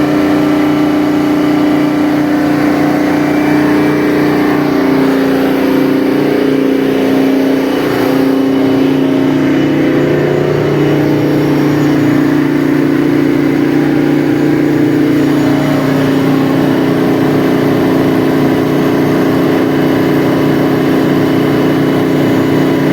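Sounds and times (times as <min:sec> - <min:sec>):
diesel generator running: 0:00.0 - 0:22.9.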